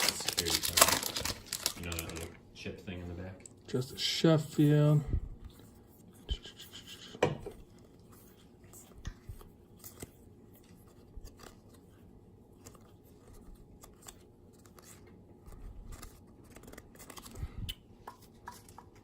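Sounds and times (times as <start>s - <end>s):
cards being flipped through: 0.0s - 2.3s, 12.6s - 17.4s.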